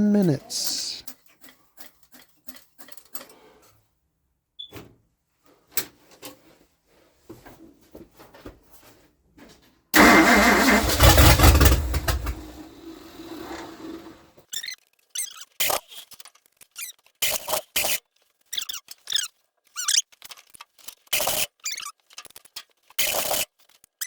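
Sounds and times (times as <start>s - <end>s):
engine cranking and running roughly: 10.0s - 14.3s.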